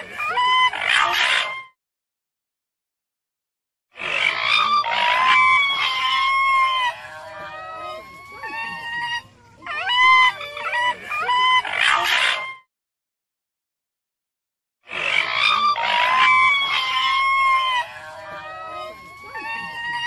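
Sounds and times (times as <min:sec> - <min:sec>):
raccoon dog rasping cries: 0:00.0 - 0:01.7, 0:04.0 - 0:12.6, 0:14.9 - 0:20.0
raccoon dog whining: 0:00.0 - 0:01.7, 0:04.3 - 0:12.7, 0:15.2 - 0:20.0.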